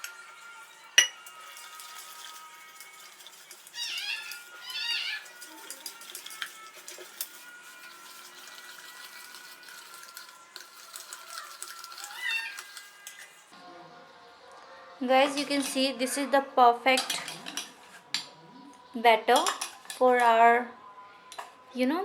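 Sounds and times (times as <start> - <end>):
cat meowing: 3.8 - 5.4, 12.0 - 12.8.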